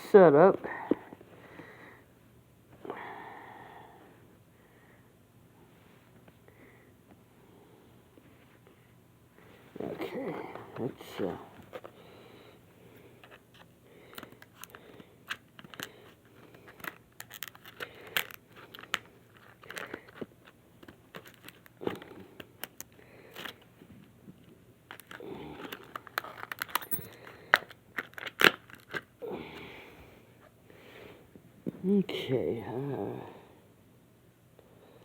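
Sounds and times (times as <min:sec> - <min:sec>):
rustling from handling lock: 0:24.9 - 0:27.2.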